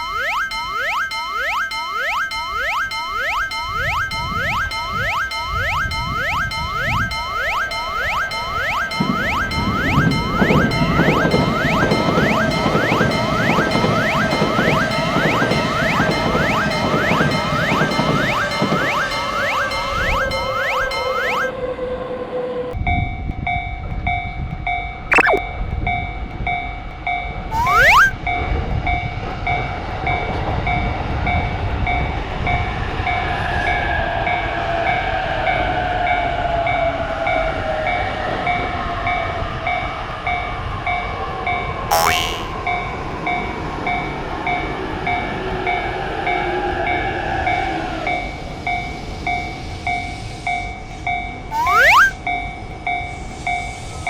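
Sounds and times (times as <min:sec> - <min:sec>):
railroad crossing bell ringing: 0:00.0 - 0:21.5
rising tones with sharp clicks: 0:00.0 - 0:21.5, 0:25.1 - 0:25.4, 0:27.5 - 0:28.2, 0:41.9 - 0:42.6, 0:51.5 - 0:52.2.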